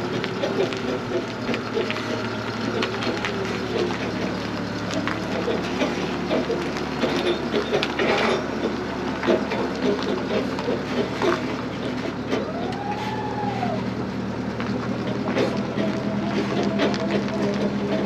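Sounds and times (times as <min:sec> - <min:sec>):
metal clanks and knocks: 0:00.0 - 0:13.1
machine engine running: 0:00.0 - 0:18.0
rising and falling whine: 0:00.0 - 0:18.0.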